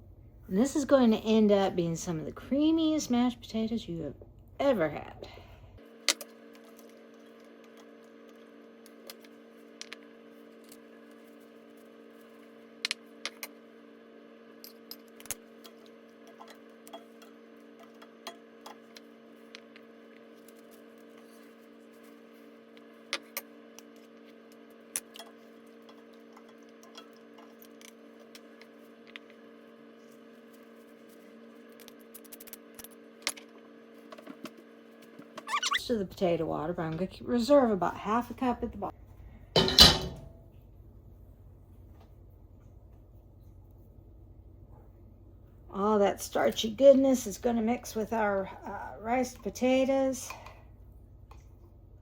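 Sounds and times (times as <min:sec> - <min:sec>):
kitchen utensils clinking: 0:39.6 - 0:40.2.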